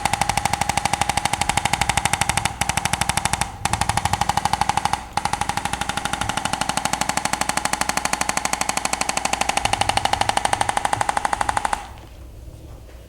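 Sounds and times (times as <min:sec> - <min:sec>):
device pulsing rapidly: 0:00.0 - 0:12.0.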